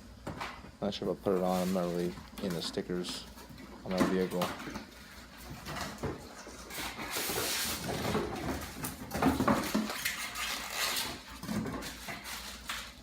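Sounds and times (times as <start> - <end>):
cardboard and paper rustling: 1.3 - 13.0.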